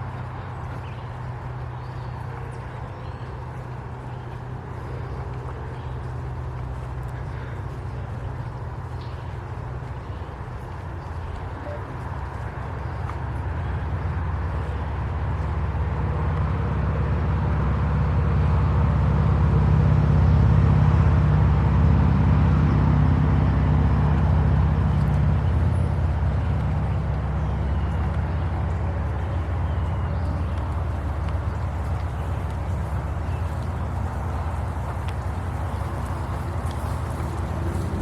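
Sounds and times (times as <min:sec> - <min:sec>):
motor engine passing: 0:15.7 - 0:38.0.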